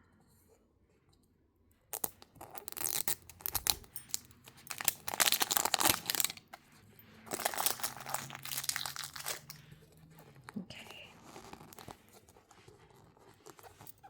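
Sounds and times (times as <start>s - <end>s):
wrapper tearing and crinkling: 2.0s - 6.5s, 7.3s - 9.7s.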